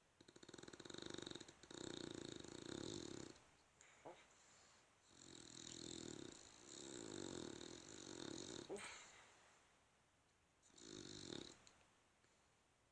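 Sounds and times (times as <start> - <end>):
dog snoring with whistle: 0.2 - 3.4, 5.0 - 9.0, 10.7 - 11.7.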